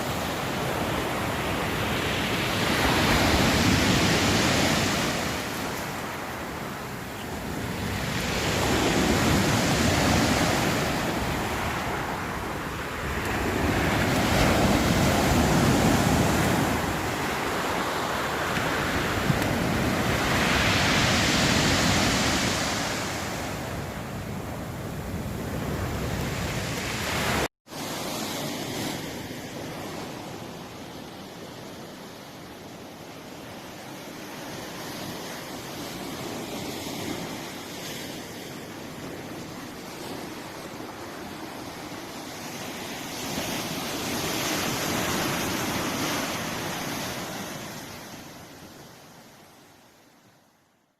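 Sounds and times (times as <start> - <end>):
sea waves breaking on shore: 0.0 - 50.0.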